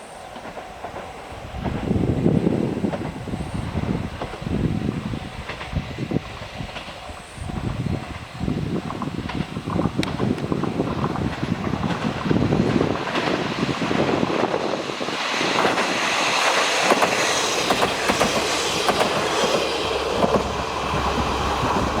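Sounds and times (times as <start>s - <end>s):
train running noise: 0.0s - 22.0s
wheels clacking over rail joints: 5.3s - 22.0s.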